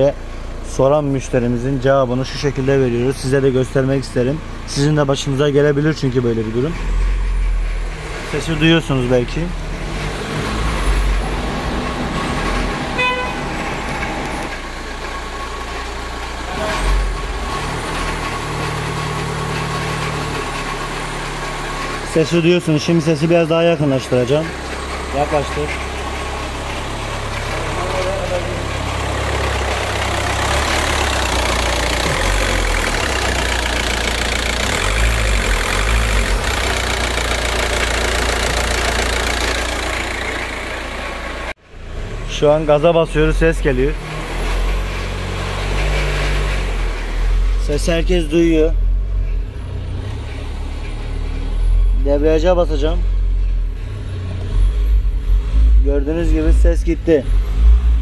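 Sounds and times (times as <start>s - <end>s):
van engine whirring: 0.0s - 58.0s
rasping clutch noise: 5.6s - 58.0s
horn toot: 12.9s - 14.4s.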